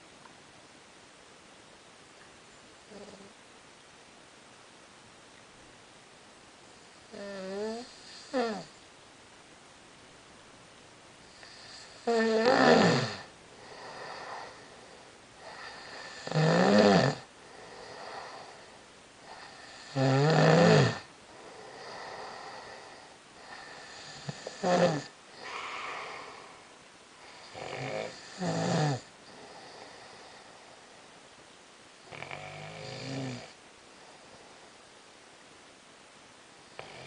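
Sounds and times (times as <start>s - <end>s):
person snoring loudly: 7.1s - 8.7s, 11.4s - 14.6s, 15.5s - 18.6s, 19.3s - 26.7s, 27.3s - 30.2s, 32.1s - 33.6s.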